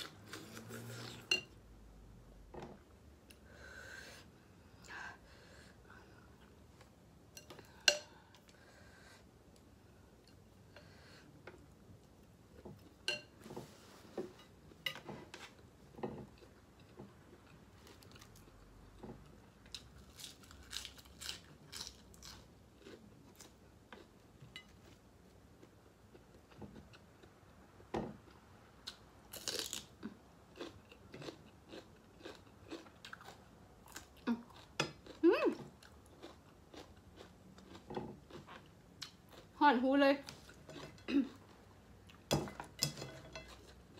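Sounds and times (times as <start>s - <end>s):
person chewing food: 14.6s - 27.6s, 28.2s - 39.6s.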